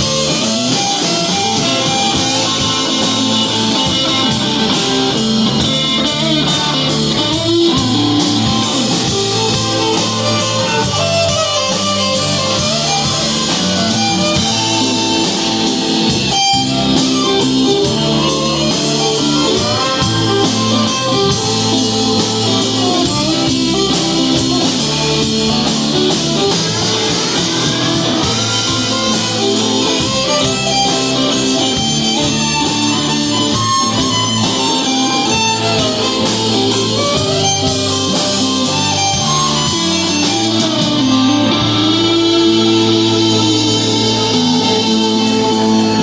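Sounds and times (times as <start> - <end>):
guitar chords: 0.0 - 46.0
lead instrument bending notes: 0.0 - 46.0
steady drum beat: 0.0 - 46.0.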